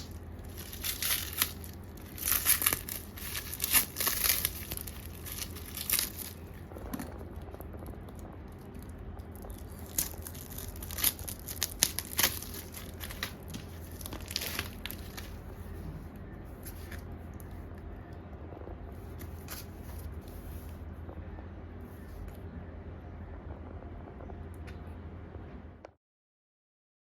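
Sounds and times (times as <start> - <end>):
packaging crinkling and tearing: 0.0 - 15.8, 19.1 - 20.1
low steady hum: 0.0 - 26.0.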